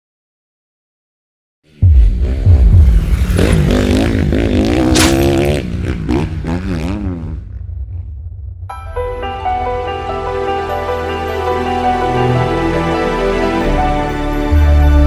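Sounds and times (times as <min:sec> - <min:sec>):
two-stroke engine revving: 0:02.1 - 0:07.5.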